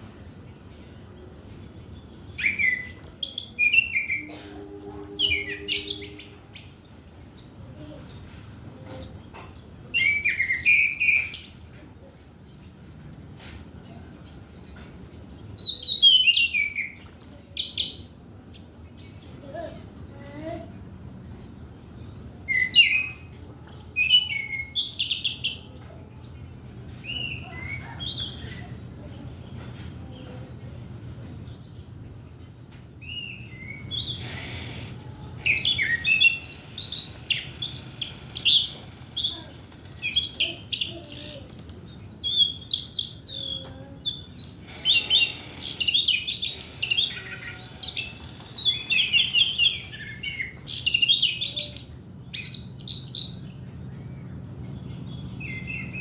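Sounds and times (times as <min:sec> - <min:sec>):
thrush singing high chirps and trills: 0:02.2 - 0:07.0, 0:31.5 - 0:53.2.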